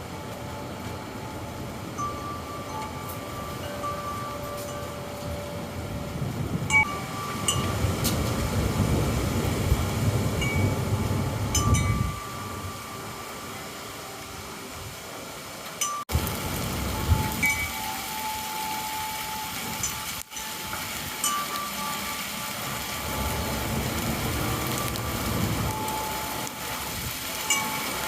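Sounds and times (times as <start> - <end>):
wind chimes ringing: 0.0 - 14.5, 15.7 - 28.0
low rumbling: 0.0 - 14.7, 21.8 - 28.0
rush of wind: 0.0 - 28.0.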